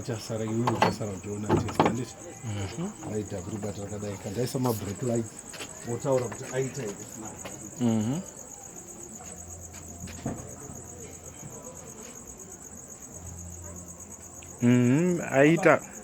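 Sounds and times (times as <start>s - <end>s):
crickets chirring: 0.0s - 16.0s
short vocal sound: 14.6s - 15.2s.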